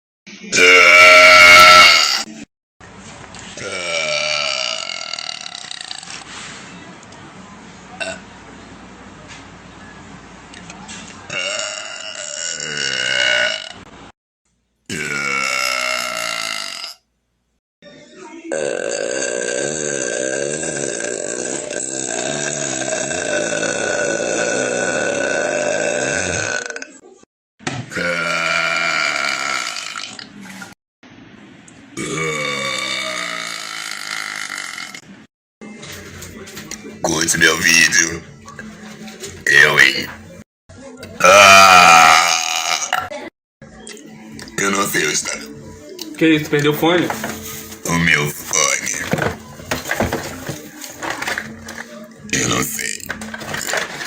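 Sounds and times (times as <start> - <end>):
woman belching loudly: 0.5 - 2.4, 3.6 - 6.0, 11.3 - 13.8, 14.9 - 17.0, 18.5 - 27.0, 27.9 - 30.3, 32.0 - 35.0, 41.0 - 43.3.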